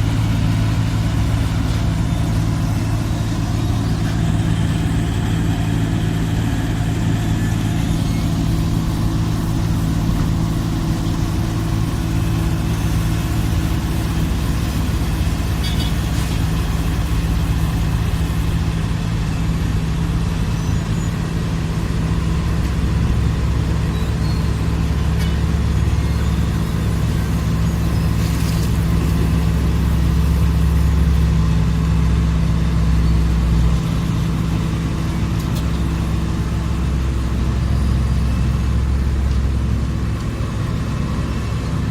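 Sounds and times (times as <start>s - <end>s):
road milling machine diesel engine: 0.0s - 41.9s.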